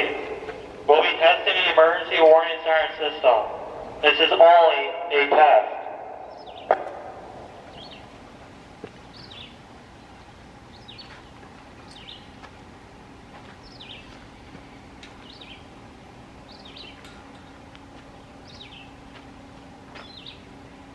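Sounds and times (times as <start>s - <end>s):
songbird chirping: 5.6s - 12.5s, 13.4s - 15.8s, 16.4s - 20.6s.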